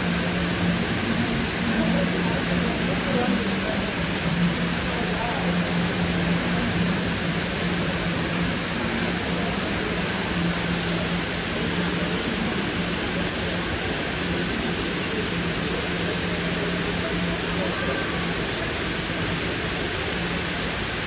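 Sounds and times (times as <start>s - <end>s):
waterfall rushing: 0.0s - 21.0s.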